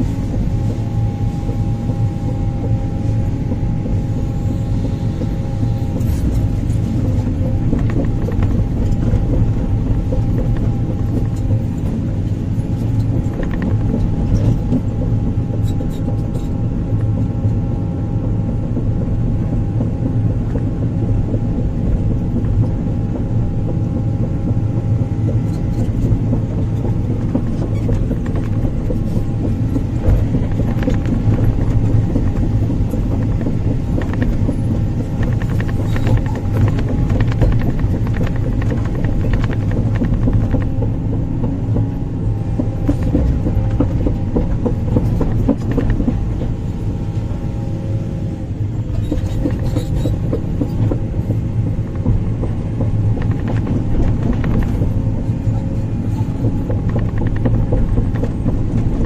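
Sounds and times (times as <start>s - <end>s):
excavator diesel engine running: 0.0s - 59.0s
steady whine: 0.0s - 59.0s
machine knocks and clunks: 18.4s - 47.7s, 48.8s - 59.0s.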